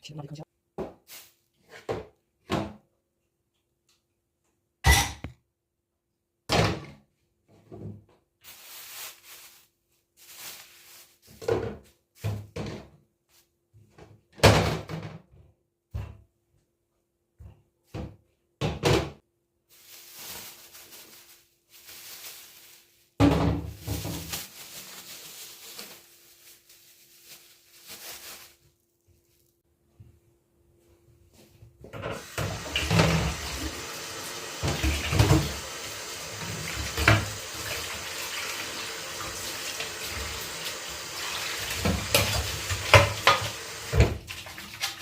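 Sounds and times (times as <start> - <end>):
rustling noise: 8.4 - 11.5, 19.7 - 29.6.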